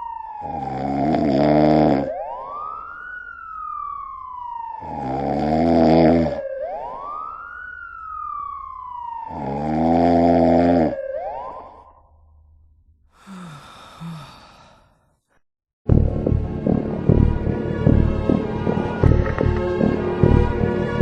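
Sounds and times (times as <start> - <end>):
siren wailing: 0.0 - 12.5
person snoring loudly: 0.4 - 2.1, 4.8 - 6.4, 9.3 - 11.0, 13.2 - 14.8.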